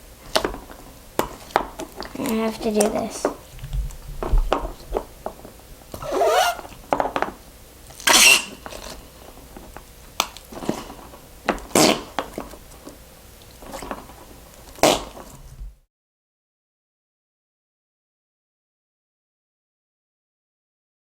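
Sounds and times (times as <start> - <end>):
noise putty squelching: 0.2 - 5.3.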